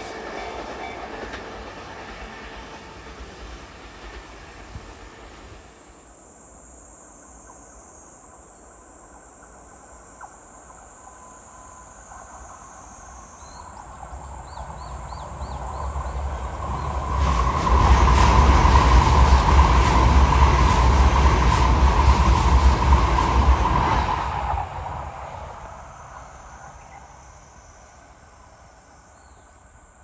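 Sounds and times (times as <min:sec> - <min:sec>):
insects chirping: 0:00.0 - 0:30.0
vehicle rumble approaching: 0:13.8 - 0:26.7.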